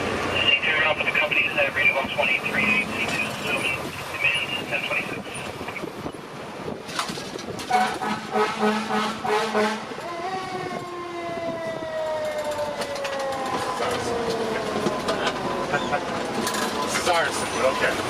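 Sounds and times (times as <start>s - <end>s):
fire truck air horn blasts: 7.7s - 10.7s
mechanical siren winding down: 10.0s - 16.9s.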